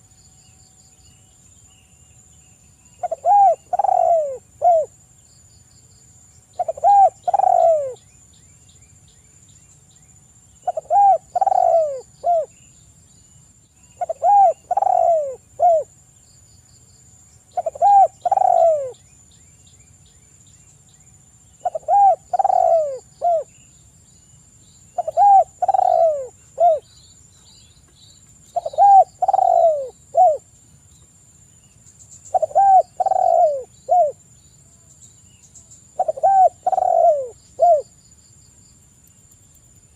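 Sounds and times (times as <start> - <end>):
faint steady high whine: 0.0 - 39.9
dove cooing: 3.0 - 4.9, 6.6 - 8.0, 10.6 - 12.5, 14.0 - 15.9, 17.5 - 19.0, 21.6 - 23.5, 25.0 - 26.9, 28.5 - 30.5, 32.3 - 34.2, 36.0 - 37.9.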